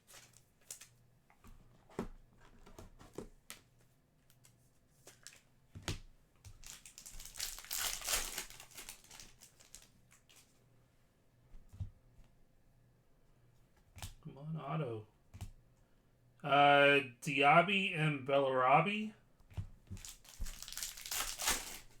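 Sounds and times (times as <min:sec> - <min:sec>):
wrapper crinkling: 0:06.6 - 0:10.5, 0:19.9 - 0:22.0.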